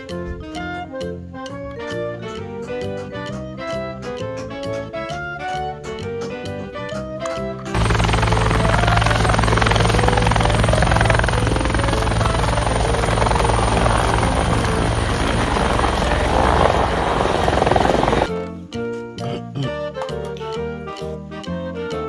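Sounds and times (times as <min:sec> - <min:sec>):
music: 0:00.0 - 0:22.0
helicopter rotor chop: 0:07.7 - 0:18.3.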